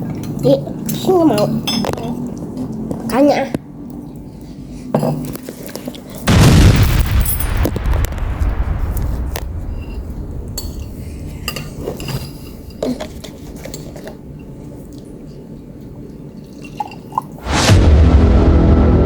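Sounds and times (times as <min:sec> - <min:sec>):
cutlery clinking on dishes: 0:00.0 - 0:02.2
low rumble: 0:06.3 - 0:15.1, 0:17.4 - 0:19.0.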